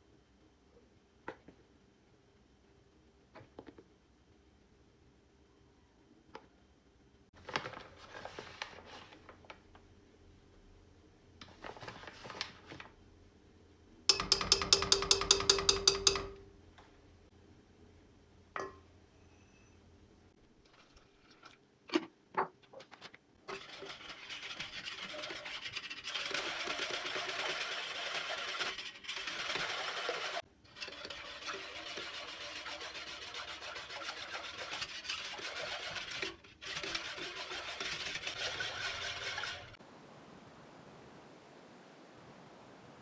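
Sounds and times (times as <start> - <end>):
fast rubbing or scraping strokes: 23.5 - 39.8.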